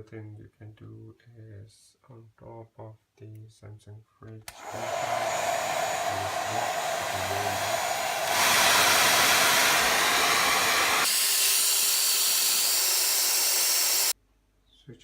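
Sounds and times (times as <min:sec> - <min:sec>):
hair dryer blowing: 0:04.5 - 0:14.2.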